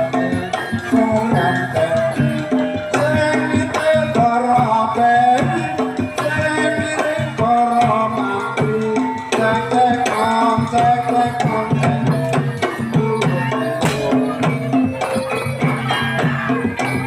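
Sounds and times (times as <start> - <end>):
struck metal percussion melody: 0.0 - 17.0
hand drum strokes: 7.0 - 17.0.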